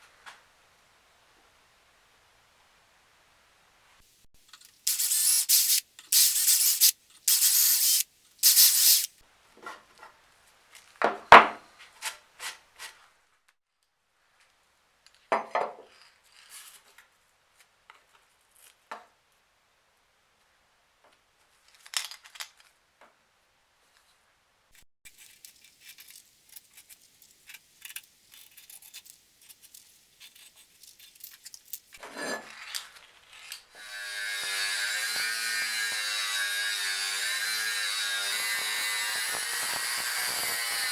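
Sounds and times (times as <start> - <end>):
short hissing bursts: 4.8 - 9.2
small power tool running: 4.9 - 9.1, 33.8 - 40.9.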